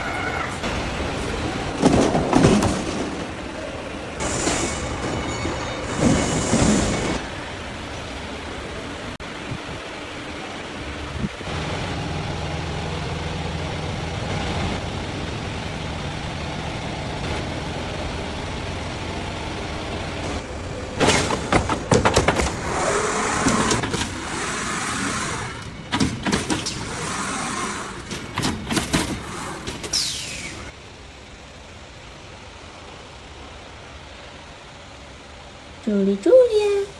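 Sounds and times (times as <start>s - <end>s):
metal clanking and banging: 0.6s - 7.4s.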